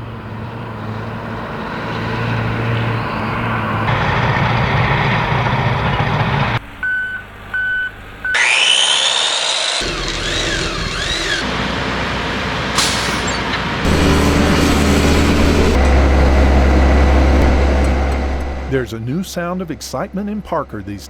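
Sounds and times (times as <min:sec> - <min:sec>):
heavy engine noise: 0:00.0 - 0:21.0
reversing beeper: 0:06.8 - 0:09.0, 0:13.9 - 0:21.0
rising whine: 0:08.2 - 0:11.1, 0:13.8 - 0:21.0
warbling tones: 0:13.9 - 0:21.0.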